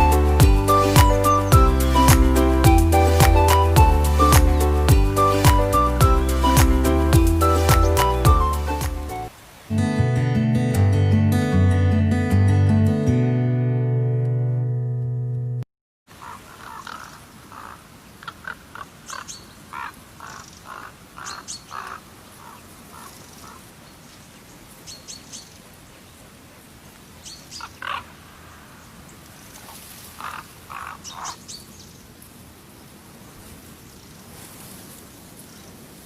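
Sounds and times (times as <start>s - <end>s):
birds chirping: 0.0s - 8.8s, 30.2s - 32.0s.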